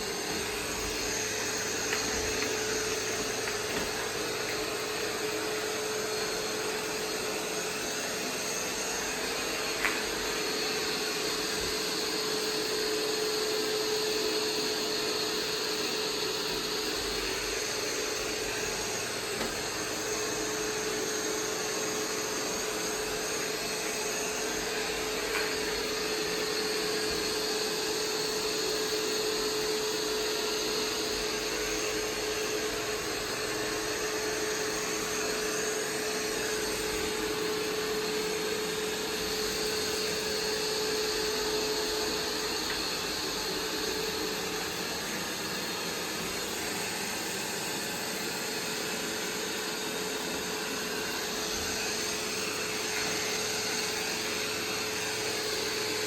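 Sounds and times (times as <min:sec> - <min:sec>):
robot vacuum running: 0:00.0 - 0:56.0.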